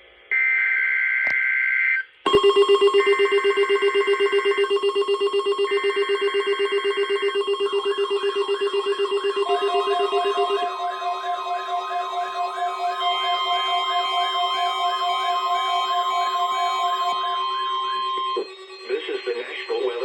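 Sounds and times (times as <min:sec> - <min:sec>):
rapid pulsing alarm beep: 0:02.3 - 0:20.0
warbling alarm: 0:02.3 - 0:20.0
two-tone data screech: 0:09.0 - 0:20.0.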